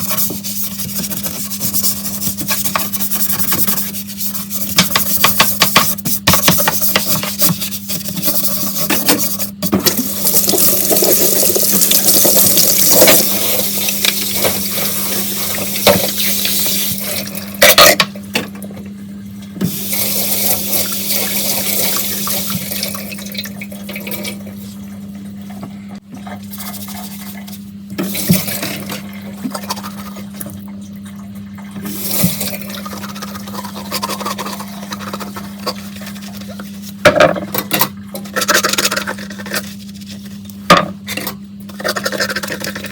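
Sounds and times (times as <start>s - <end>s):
tap water running into sink: 9.8s - 17.8s.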